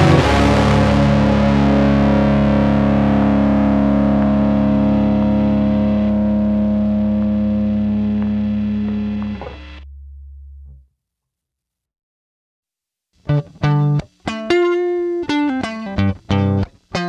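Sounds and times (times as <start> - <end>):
distorted electric guitar chord: 0.0 - 10.7.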